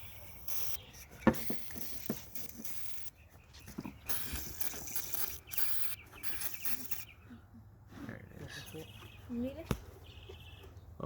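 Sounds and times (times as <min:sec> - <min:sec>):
metal parts and tools clicking: 0:04.1 - 0:07.1.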